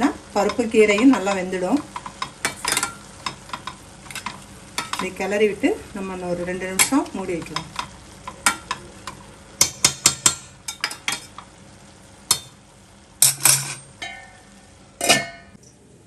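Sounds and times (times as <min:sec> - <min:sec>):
spatula scraping a pan: 0:00.4 - 0:05.6, 0:13.2 - 0:14.4.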